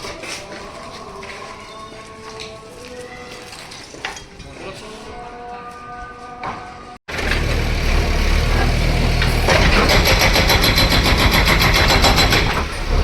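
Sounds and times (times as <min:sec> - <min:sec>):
diesel machinery engine running: 0:07.1 - 0:13.0
rapid metallic clatter: 0:07.1 - 0:13.0.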